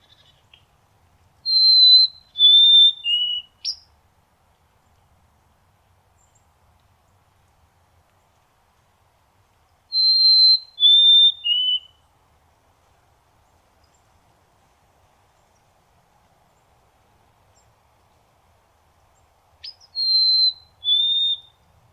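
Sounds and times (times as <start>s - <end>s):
sparrow singing whistled notes: 1.4s - 3.9s, 9.9s - 12.0s, 19.6s - 21.6s.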